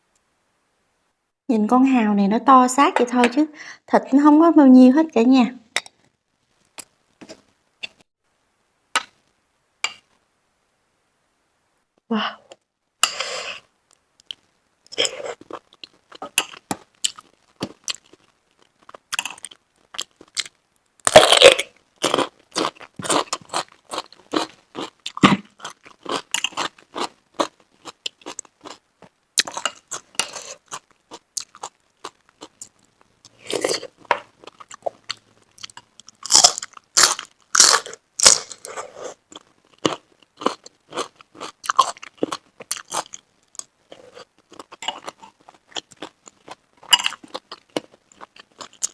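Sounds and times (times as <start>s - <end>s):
person chewing shellfish: 14.2s - 48.9s.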